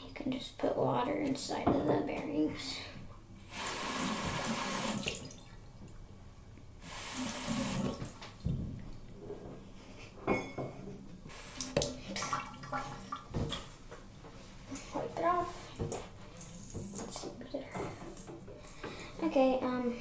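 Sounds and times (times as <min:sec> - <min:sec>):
water tap running: 0:03.5 - 0:05.4, 0:06.8 - 0:08.2.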